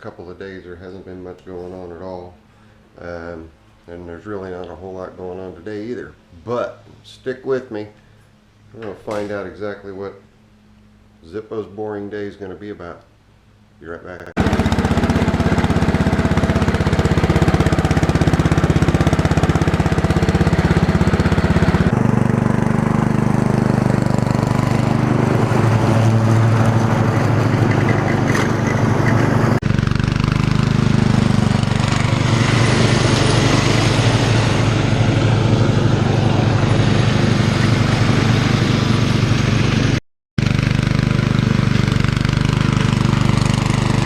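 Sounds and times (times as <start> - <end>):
riding lawn mower engine mowing: 14.3 - 44.0.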